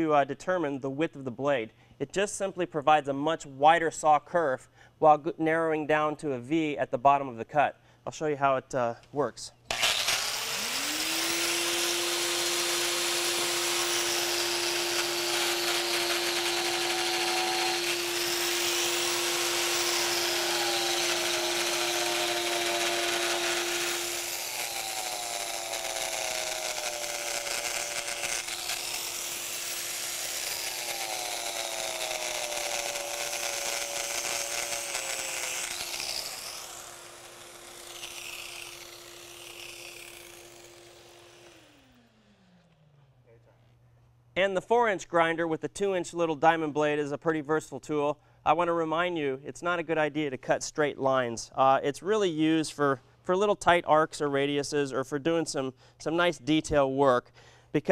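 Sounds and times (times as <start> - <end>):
blade grinding through material: 9.7 - 42.3
grinder motor whine: 9.7 - 43.2.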